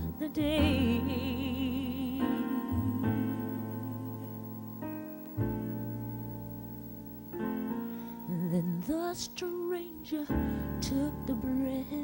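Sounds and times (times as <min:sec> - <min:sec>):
person singing: 0:00.0 - 0:04.3, 0:08.2 - 0:12.0
piano chords: 0:00.0 - 0:12.0.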